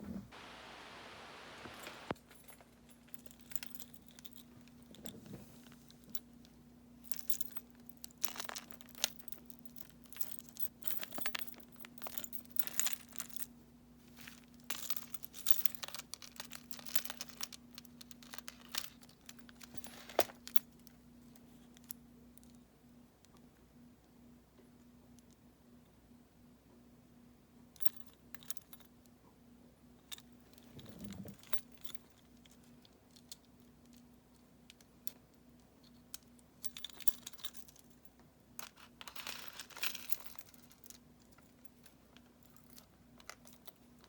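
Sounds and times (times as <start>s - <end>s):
faint steady hum: 0.0s - 44.0s.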